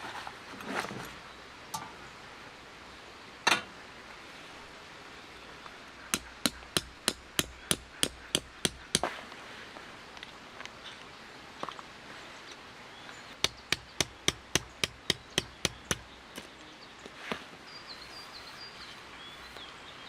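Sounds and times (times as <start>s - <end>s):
hammer strikes: 6.1s - 9.1s, 13.4s - 16.0s.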